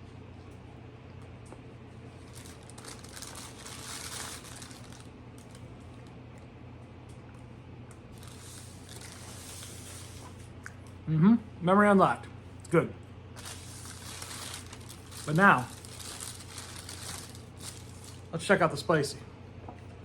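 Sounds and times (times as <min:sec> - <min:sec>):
low steady hum: 0:00.0 - 0:20.0
paper wrapper crinkling: 0:02.2 - 0:05.7, 0:08.1 - 0:10.5, 0:13.4 - 0:18.4.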